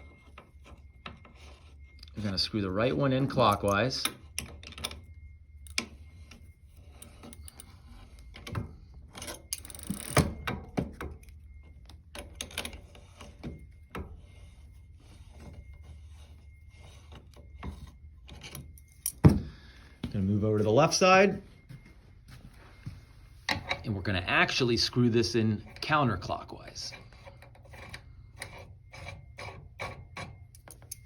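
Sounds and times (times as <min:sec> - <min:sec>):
metal parts clicking and knocking: 0:03.2 - 0:14.0, 0:17.2 - 0:19.5, 0:26.8 - 0:31.0
metal parts scraping: 0:05.7 - 0:10.5.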